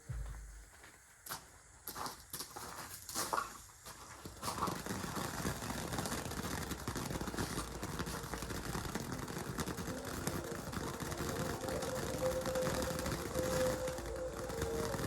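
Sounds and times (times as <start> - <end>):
vehicle low rumble: 6.7 - 15.0
held steady tone: 7.6 - 15.0.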